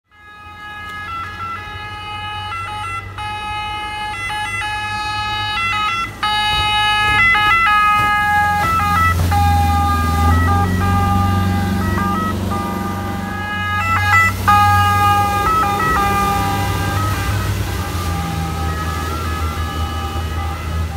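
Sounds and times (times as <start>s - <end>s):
two-tone siren: 0.0s - 20.9s
boat engine rumble: 0.1s - 20.9s.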